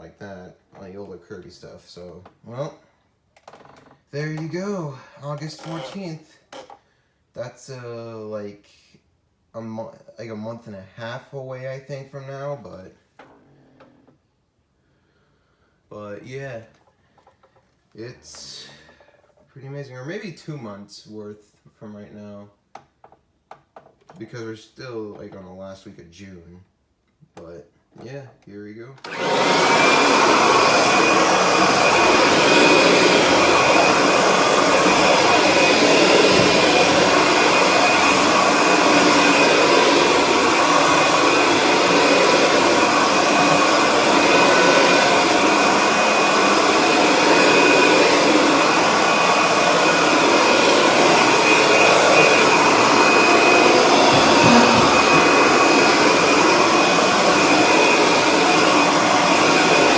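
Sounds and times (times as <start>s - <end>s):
vacuum cleaner running: 29.0s - 59.9s.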